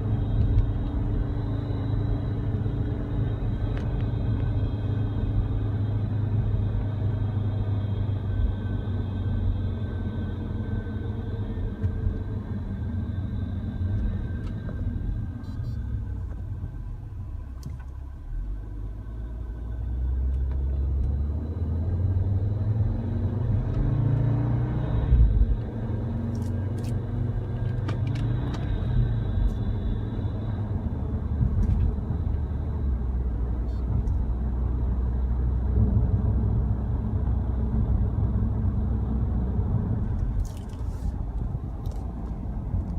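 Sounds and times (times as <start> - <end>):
car cabin rumble: 0.0 - 21.2, 23.4 - 42.9.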